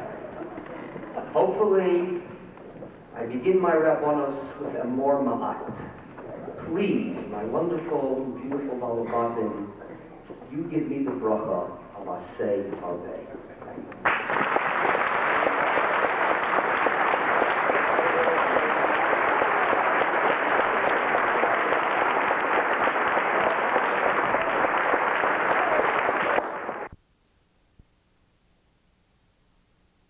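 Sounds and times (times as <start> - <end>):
audience applauding: 14.0 - 26.9.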